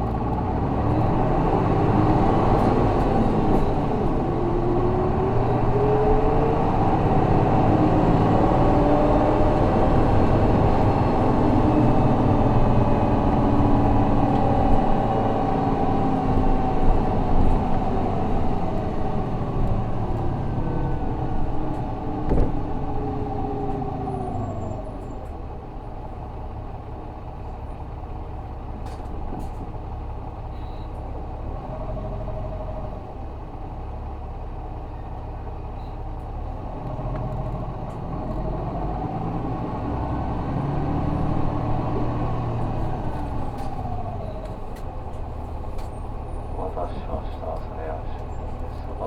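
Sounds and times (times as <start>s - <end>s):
bus diesel engine rumbling: 0.0s - 49.0s
drivetrain whine: 0.9s - 25.5s, 36.9s - 49.0s.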